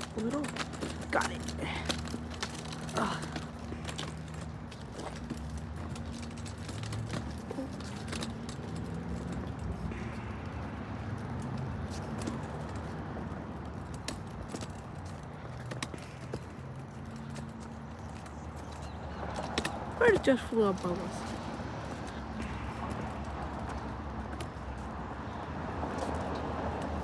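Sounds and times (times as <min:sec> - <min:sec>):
footsteps on pavement: 0:00.0 - 0:27.0.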